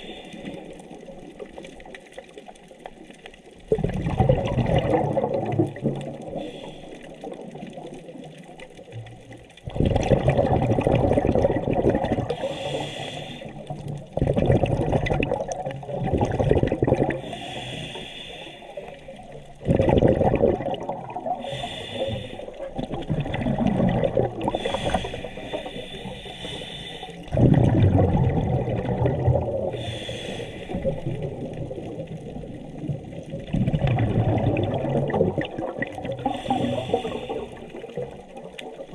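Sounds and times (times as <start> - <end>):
gurgling exhaled bubbles: 0.0 - 38.9
regulator inhalation hiss: 6.3 - 7.1, 12.3 - 13.8, 17.2 - 19.2, 21.4 - 22.7, 24.5 - 27.3, 29.8 - 31.0, 36.2 - 37.8.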